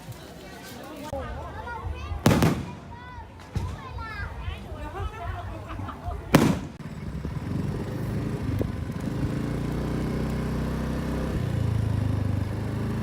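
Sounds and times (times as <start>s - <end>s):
motorbike engine running: 6.8s - 13.0s.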